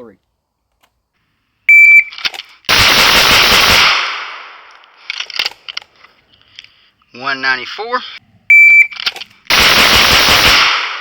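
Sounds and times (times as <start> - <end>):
shot timer beep: 1.7 - 2.1, 8.5 - 9.0
rapid pistol shots: 2.7 - 4.6, 9.5 - 11.0
gunshot echo: 2.7 - 4.7, 9.5 - 11.0.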